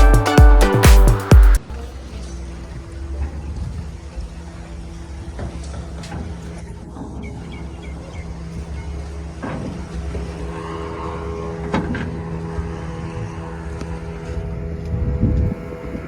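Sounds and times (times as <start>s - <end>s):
boat engine humming: 7.7s - 16.0s.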